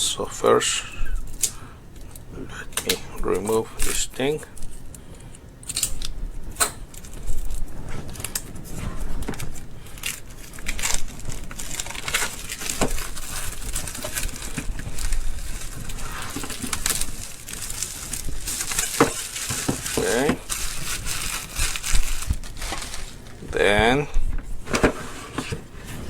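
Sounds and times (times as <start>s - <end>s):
packaging crinkling and rustling: 6.8s - 26.0s.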